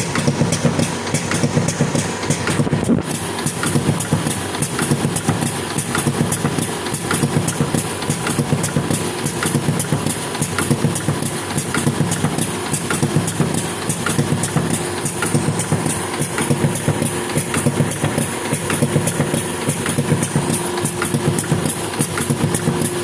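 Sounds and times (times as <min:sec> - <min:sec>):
regular clicking clatter: 0:00.0 - 0:23.0.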